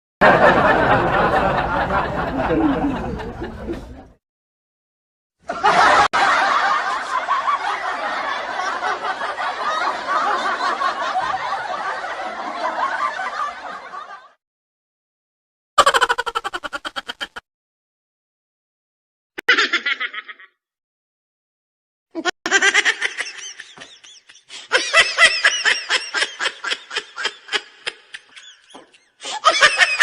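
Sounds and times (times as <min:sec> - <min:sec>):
laughter: 0:00.2 - 0:04.2, 0:05.4 - 0:14.4, 0:15.8 - 0:17.4, 0:19.4 - 0:20.6, 0:22.2 - 0:30.0.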